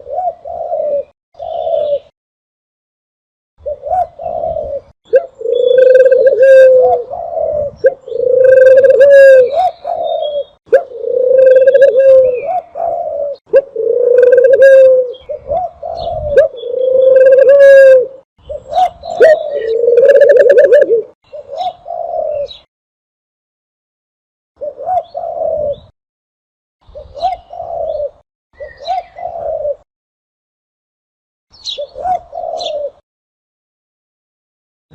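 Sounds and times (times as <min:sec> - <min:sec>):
dove cooing: 0:00.0 - 0:02.1, 0:03.6 - 0:22.7, 0:24.6 - 0:25.9, 0:26.8 - 0:29.9, 0:31.7 - 0:33.0.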